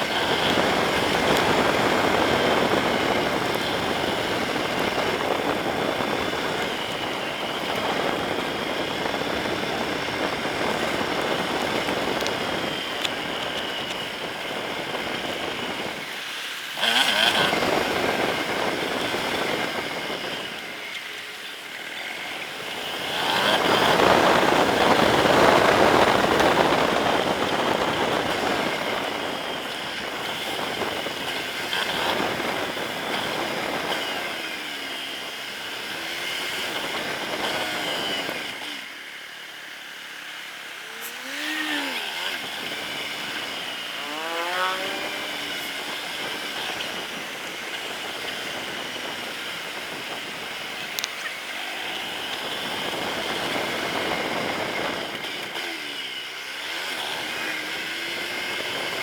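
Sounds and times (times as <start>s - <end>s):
heavy wind noise: 0.0s - 16.2s, 16.9s - 20.9s, 22.5s - 34.4s, 51.8s - 55.4s
motorcycle engine running: 0.0s - 59.0s.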